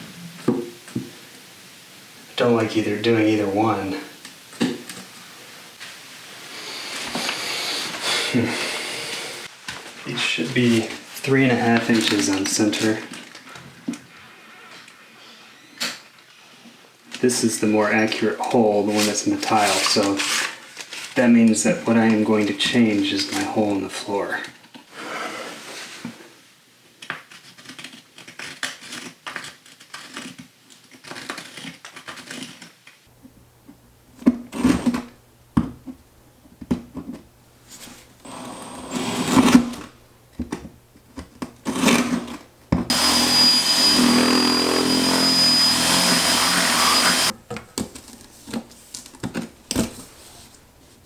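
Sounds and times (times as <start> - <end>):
power tool whining: 6.4 - 9.5, 38.2 - 40.0, 41.6 - 47.6
knocks and handling noises: 33.2 - 38.6, 39.3 - 44.0, 47.2 - 51.0.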